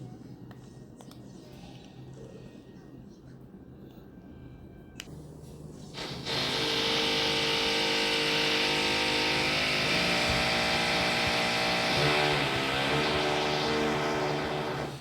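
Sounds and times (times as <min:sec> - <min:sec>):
power tool whining and grinding: 0:06.0 - 0:15.0.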